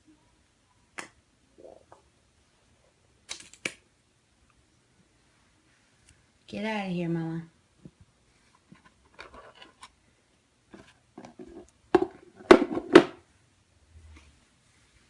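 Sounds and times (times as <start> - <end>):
soft rustling: 14.0 - 15.0.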